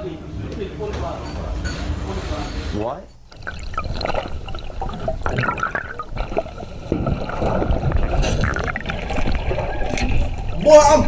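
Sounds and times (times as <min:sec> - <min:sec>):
water rushing and sloshing: 0:00.4 - 0:11.0
knocks and splashes: 0:03.2 - 0:10.6.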